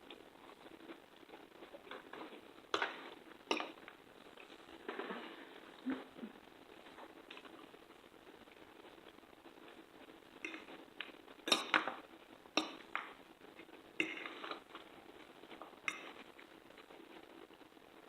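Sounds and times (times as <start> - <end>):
cutlery clinking against a plate: 11.5 - 11.9, 12.6 - 12.9, 15.9 - 16.2.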